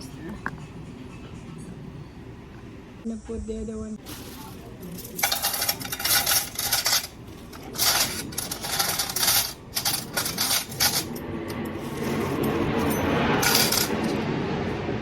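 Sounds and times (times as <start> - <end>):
dishes and utensils clinking: 4.1 - 14.2.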